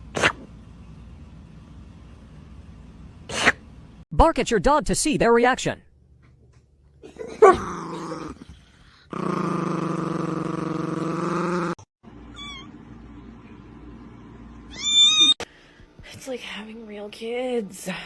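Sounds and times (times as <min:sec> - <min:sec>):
cat yowling and meowing: 0:14.7 - 0:15.4.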